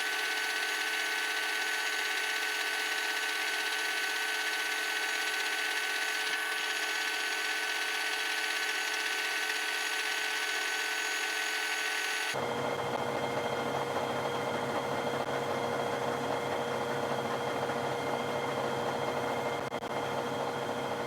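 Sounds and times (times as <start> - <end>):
milling machine whine: 0.0 - 12.4.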